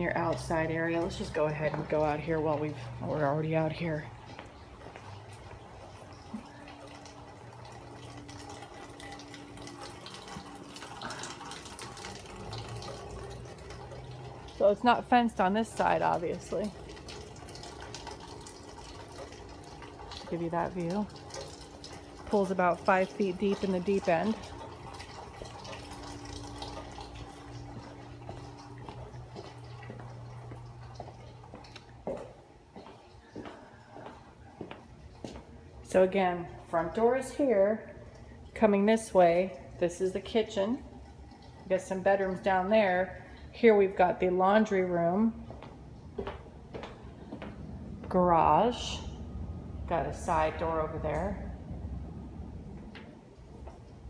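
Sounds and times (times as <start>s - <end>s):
pool water trickling and splashing: 0.0s - 54.0s
steady low hum: 0.0s - 54.0s.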